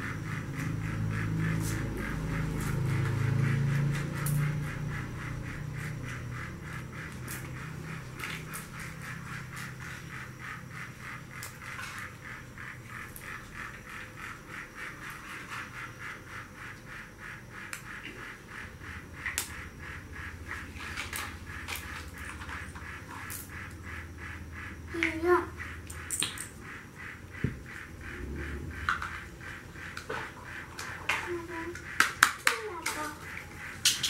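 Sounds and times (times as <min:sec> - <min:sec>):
toy train clicking on track: 0:29.8 - 0:34.0.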